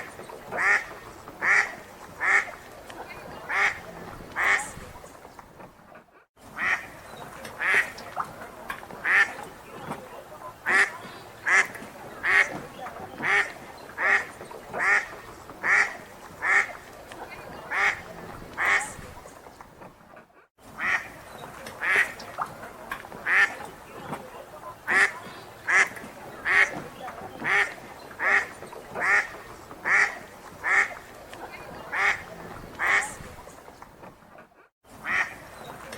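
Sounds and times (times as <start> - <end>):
duck quacking: 0.5 - 2.6, 3.4 - 4.8, 6.6 - 7.0, 7.6 - 8.0, 9.0 - 9.4, 10.6 - 12.6, 13.2 - 16.8, 17.6 - 19.0, 20.8 - 21.2, 21.8 - 22.2, 23.2 - 23.6, 24.9 - 31.1, 31.7 - 33.2, 35.0 - 35.4.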